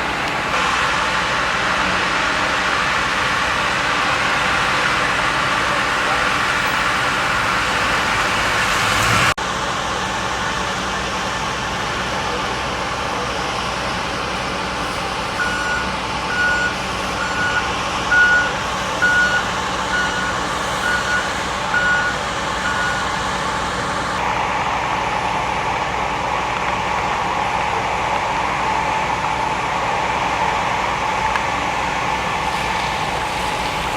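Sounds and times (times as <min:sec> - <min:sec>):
vehicle engine running: 0:00.0 - 0:33.9
truck reversing alarm beeping: 0:10.8 - 0:24.2.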